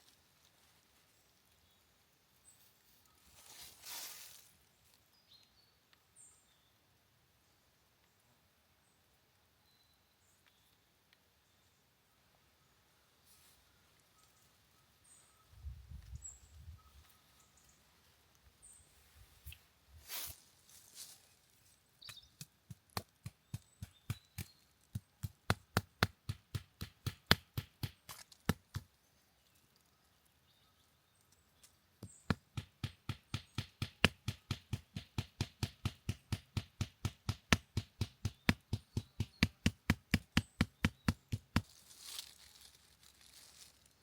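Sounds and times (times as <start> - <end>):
sharp chopping knocks: 32.3 - 41.6.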